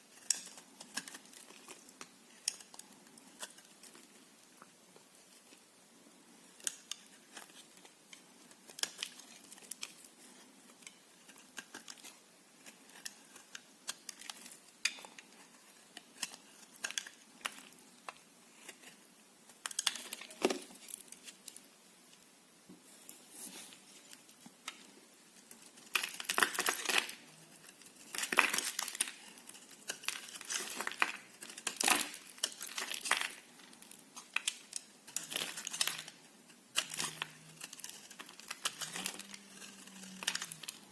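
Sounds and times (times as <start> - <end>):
knife cutting dry soap: 25.5 - 40.8.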